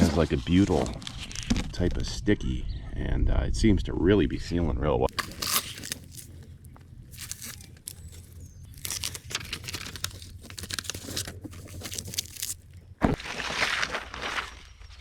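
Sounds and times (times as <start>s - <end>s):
foam crinkling and tearing: 5.1s - 14.5s.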